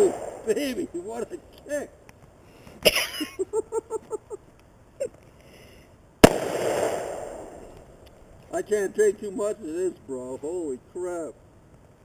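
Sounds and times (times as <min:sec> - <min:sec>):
revolver gunshot with echo: 0:00.0 - 0:00.9, 0:06.2 - 0:07.8.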